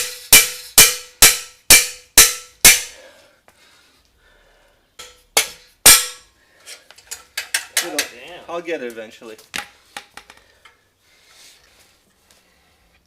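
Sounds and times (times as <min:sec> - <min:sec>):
hammer striking steel: 0:00.0 - 0:03.0, 0:05.0 - 0:06.2.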